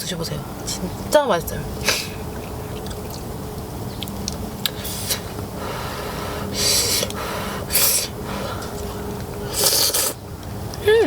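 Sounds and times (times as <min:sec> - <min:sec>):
steady low hum: 0:00.0 - 0:11.0
noodles being slurped: 0:06.5 - 0:08.1, 0:09.5 - 0:10.2.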